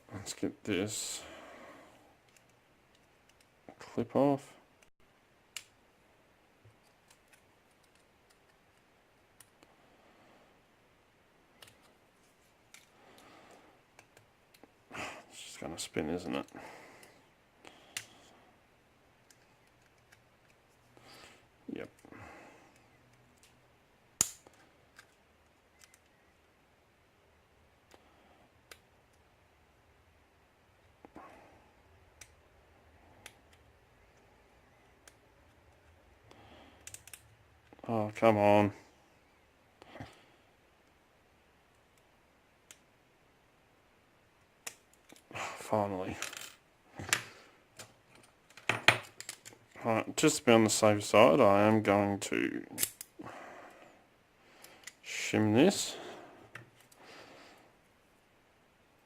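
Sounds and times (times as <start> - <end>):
padlock parts clicking: 24.2 - 26.2, 36.8 - 37.3, 52.8 - 53.2.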